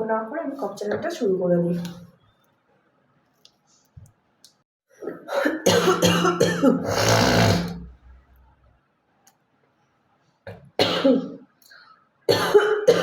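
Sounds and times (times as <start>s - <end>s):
woman coughing: 5.1s - 7.2s, 10.8s - 11.4s, 12.3s - 13.0s.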